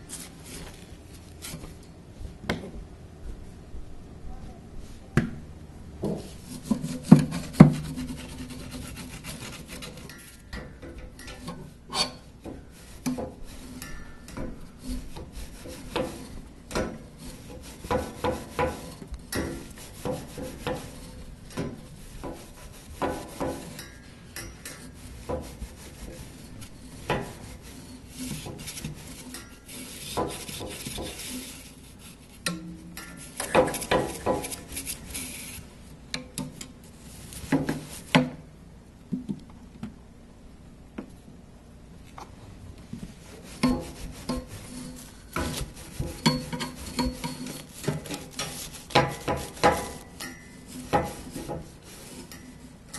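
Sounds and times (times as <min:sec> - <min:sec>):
brush scrubbing condenser coils: 0:06.1 - 0:38.5, 0:42.8 - 0:52.9
brush knocking on metal: 0:12.5 - 0:31.5, 0:32.4 - 0:34.9, 0:43.4 - 0:52.6.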